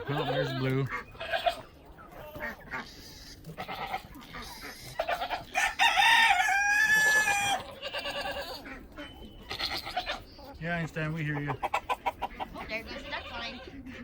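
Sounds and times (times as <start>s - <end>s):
chicken clucking: 0.0s - 14.0s
rooster crowing: 5.4s - 7.7s.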